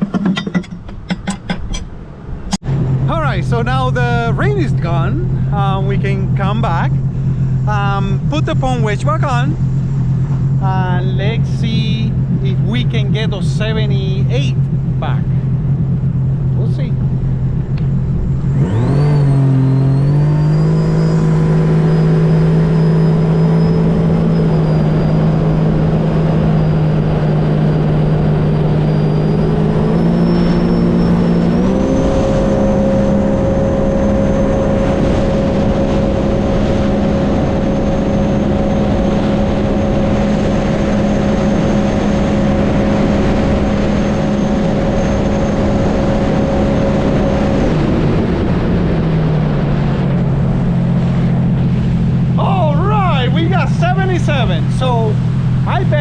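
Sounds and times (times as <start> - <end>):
jet ski engine at full throttle: 3.0 - 56.0.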